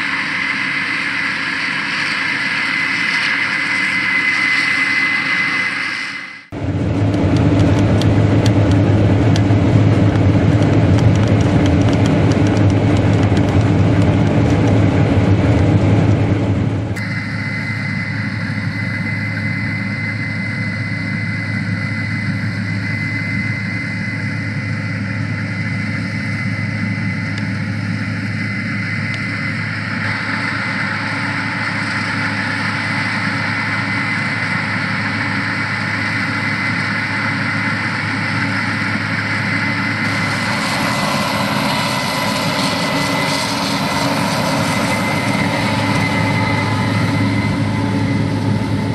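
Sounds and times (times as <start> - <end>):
thin high whine: 0.0 - 10.9, 12.7 - 48.9
combine harvester running: 0.0 - 48.9.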